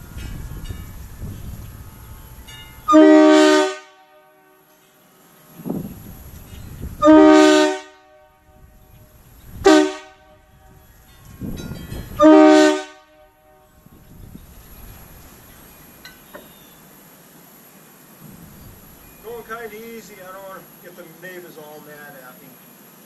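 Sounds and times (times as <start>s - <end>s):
train horn blasts: 0.0s - 13.9s.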